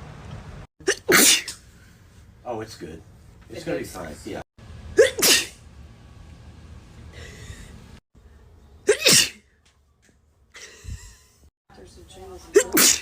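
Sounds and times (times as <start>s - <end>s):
woman sneezing: 0.8s - 1.6s, 5.0s - 5.6s, 8.9s - 9.4s, 12.6s - 13.0s.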